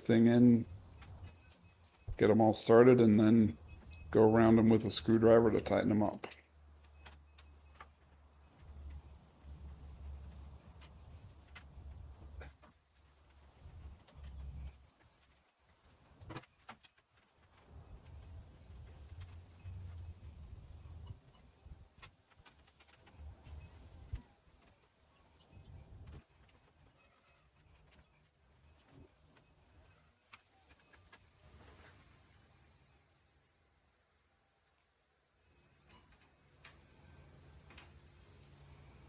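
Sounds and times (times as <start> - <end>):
cricket chirping: 6.6 - 17.7.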